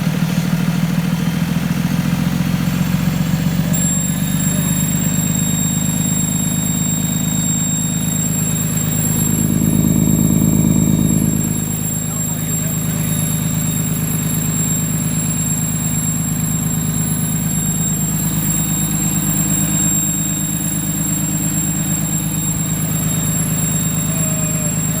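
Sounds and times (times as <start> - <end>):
diesel engine idling: 0.0 - 25.0
high-pitched whistle: 2.3 - 25.0.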